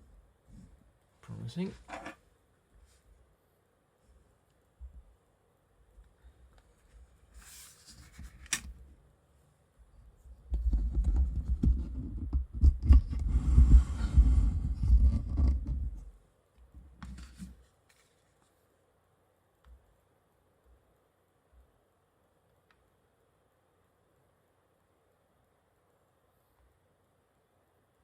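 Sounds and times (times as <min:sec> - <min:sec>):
rubbing and scraping: 0:10.6 - 0:16.1
low rubbing and knocking: 0:10.7 - 0:16.1.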